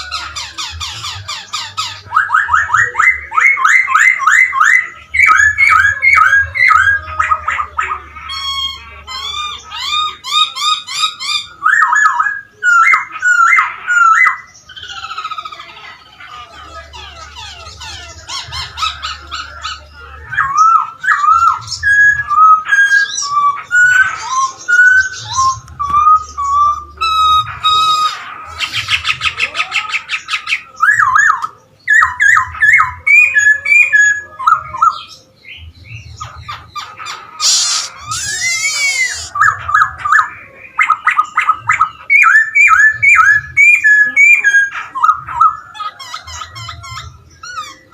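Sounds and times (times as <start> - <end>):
harsh buzzy chattering calls: 0.0 - 35.2, 36.0 - 47.9
bird singing whistled phrases: 19.4 - 47.9.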